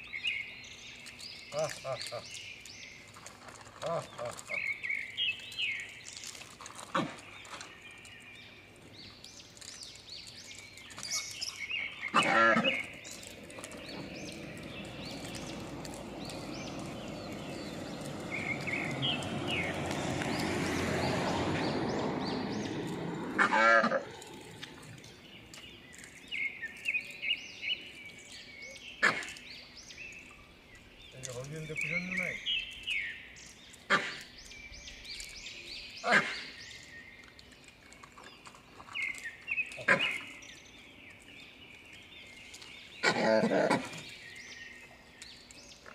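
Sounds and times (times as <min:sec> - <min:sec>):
bird chirps: 0:04.1 - 0:23.4, 0:24.1 - 0:43.1
drawn-out animal calls: 0:12.0 - 0:25.0.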